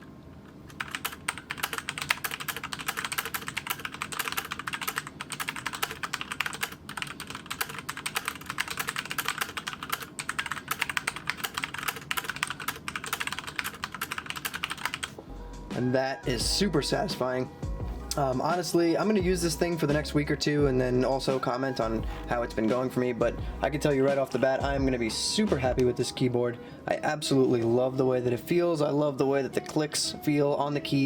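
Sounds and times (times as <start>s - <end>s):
mechanical keyboard typing: 0.7s - 15.2s.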